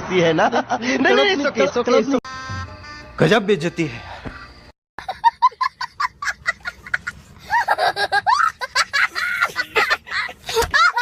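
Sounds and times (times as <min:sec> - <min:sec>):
comedy cackling sound effect: 0:05.0 - 0:11.0.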